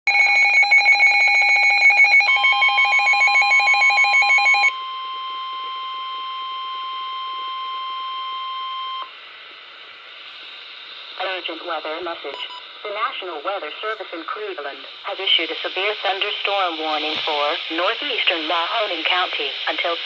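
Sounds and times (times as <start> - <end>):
pulsing electronic alarm beep: 0.1 - 9.1, 12.3 - 12.7
steady warning alarm tone: 0.1 - 9.1.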